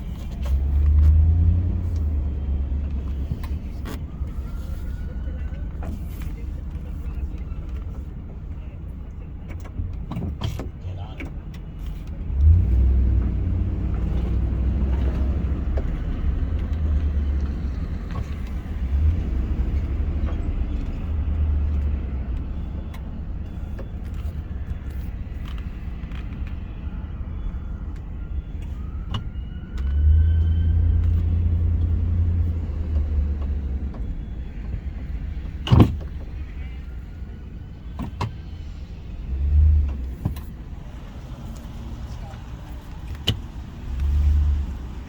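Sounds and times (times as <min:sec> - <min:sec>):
car engine and road noise: 0:00.0 - 0:45.0.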